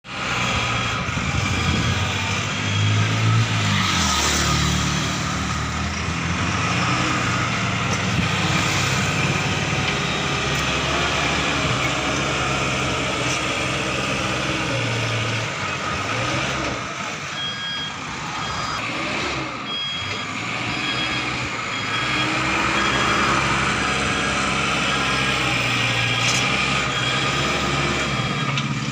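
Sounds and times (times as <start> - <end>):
diesel engine drone: 0.0 - 28.9
high beeps: 8.5 - 10.9, 17.3 - 18.8, 19.6 - 25.6.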